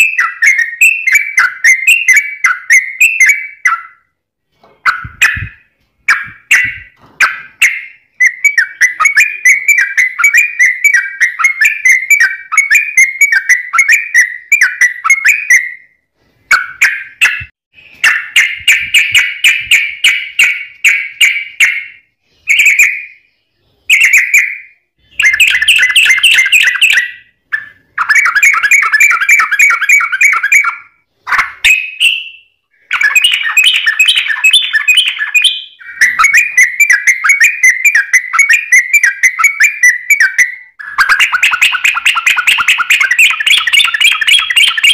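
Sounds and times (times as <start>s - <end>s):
bird chattering song: 0.0s - 4.1s, 4.7s - 44.9s.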